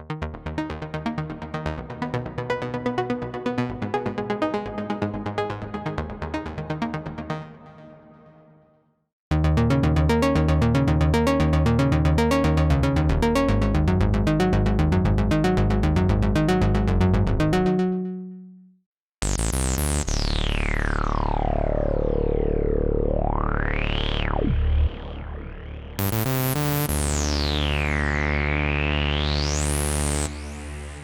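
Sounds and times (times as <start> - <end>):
sequenced synthesizer bass: 9.3 - 18.6, 19.2 - 31.0
synthesizer note with filter sweep: 9.3 - 18.7, 19.9 - 28.0.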